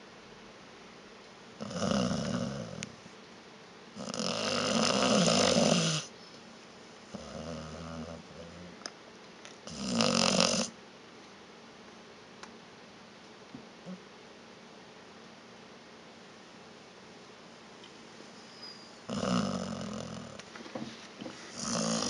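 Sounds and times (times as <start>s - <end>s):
dog snoring: 1.6s - 3.0s, 4.0s - 6.1s, 7.1s - 8.8s, 9.6s - 10.8s, 19.1s - 20.4s, 21.5s - 22.0s.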